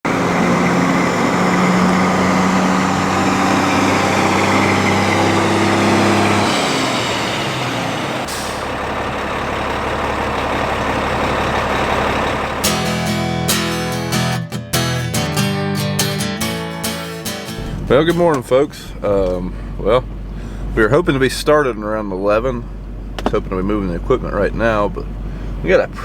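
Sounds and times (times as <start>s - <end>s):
heavy engine running: 0.0s - 26.0s
low steady hum: 17.6s - 26.0s.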